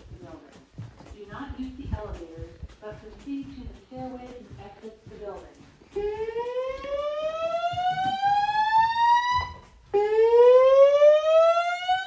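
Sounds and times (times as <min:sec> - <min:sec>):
fire alarm whoop tone: 0:06.3 - 0:12.0.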